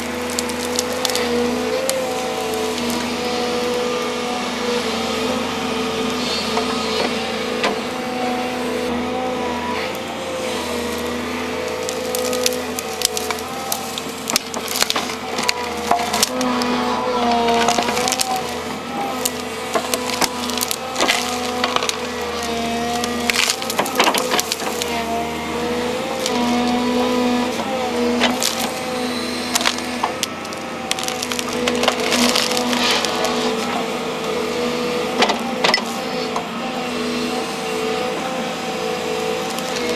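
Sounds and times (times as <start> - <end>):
tree roots cracking and snapping: 0.0 - 4.2, 10.7 - 36.0, 38.7 - 39.9
excavator engine under load: 0.0 - 39.9.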